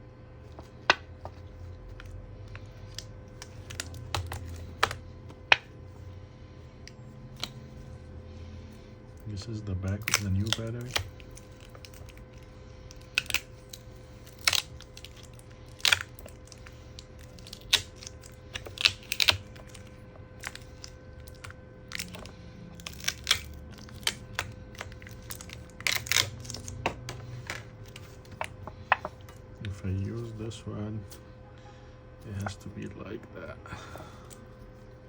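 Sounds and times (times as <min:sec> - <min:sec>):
faint steady hum: 0:00.0 - 0:35.0
crinkling: 0:08.8 - 0:30.5.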